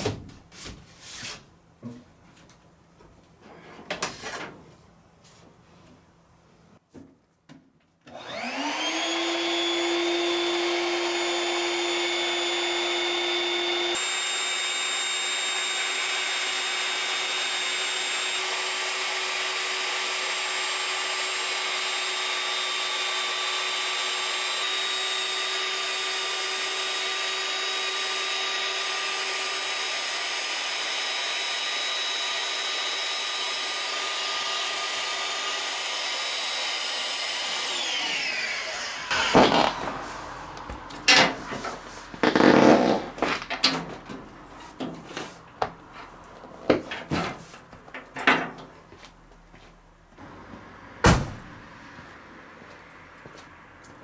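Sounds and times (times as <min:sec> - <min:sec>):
electric blower motor whining: 0:08.1 - 0:43.6.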